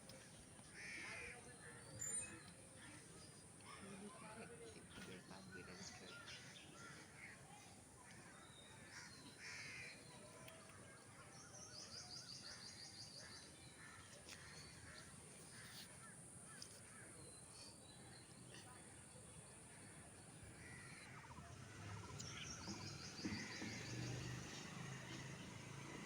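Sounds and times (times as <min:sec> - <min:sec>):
birds chirping: 0:16.5 - 0:26.0.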